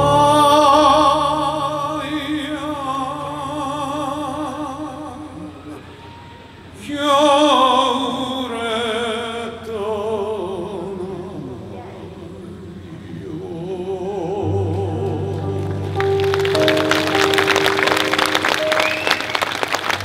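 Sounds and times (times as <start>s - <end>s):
slow melody with vibrato: 0.0s - 4.3s, 14.4s - 19.8s.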